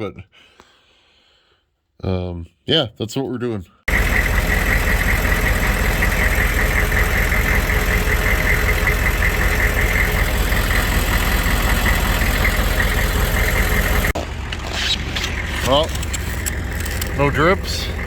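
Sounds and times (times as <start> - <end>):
diesel engine idling: 3.9 - 18.0.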